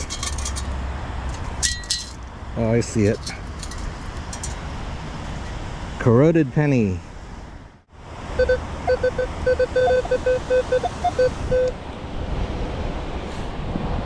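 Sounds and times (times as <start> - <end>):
wind: 0.0 - 14.0
metal detector beeping: 8.4 - 11.8.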